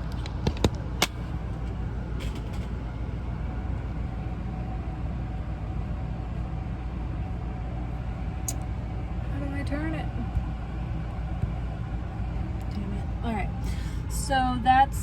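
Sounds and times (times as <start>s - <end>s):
low mechanical rumble: 0.0s - 15.0s.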